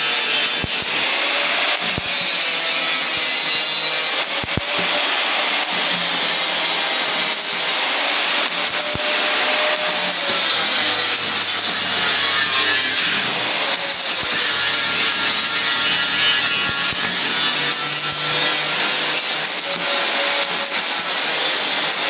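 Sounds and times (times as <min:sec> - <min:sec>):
sharp welding pops: 0:00.0 - 0:01.0, 0:01.8 - 0:05.0, 0:05.6 - 0:07.8, 0:08.4 - 0:09.1, 0:09.7 - 0:22.0
arc welding crackling hiss: 0:00.0 - 0:22.0.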